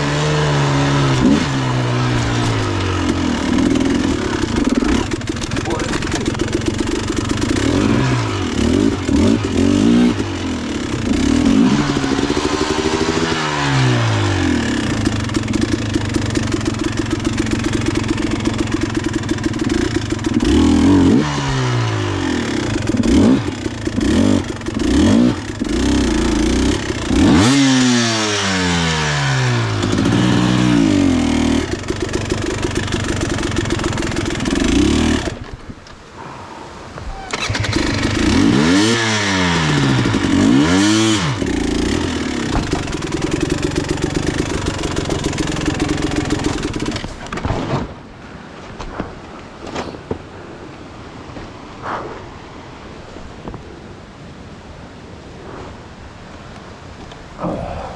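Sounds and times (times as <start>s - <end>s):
dirt bike engine revving: 0.0s - 35.6s, 37.1s - 47.2s.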